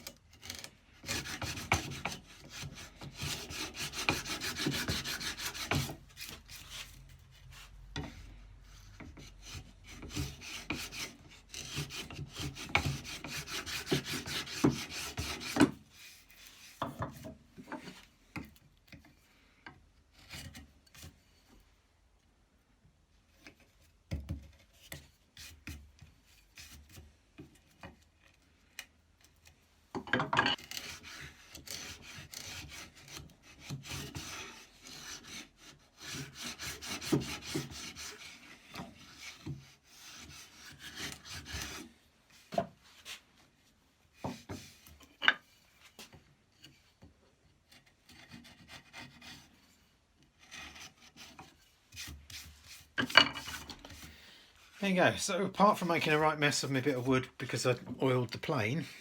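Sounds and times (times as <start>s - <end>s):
hand plane blade scraping wood: 0.0s - 18.2s, 30.6s - 43.3s, 47.6s - 54.7s.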